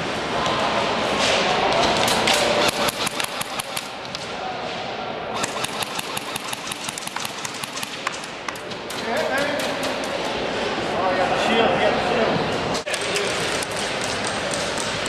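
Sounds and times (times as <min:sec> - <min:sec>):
airsoft guns firing: 0:02.0 - 0:04.0, 0:05.4 - 0:09.9.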